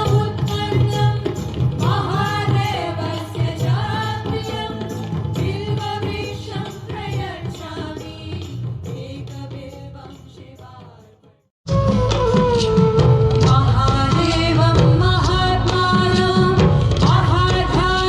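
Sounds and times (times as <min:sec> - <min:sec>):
steady drum beat: 0:00.0 - 0:10.8.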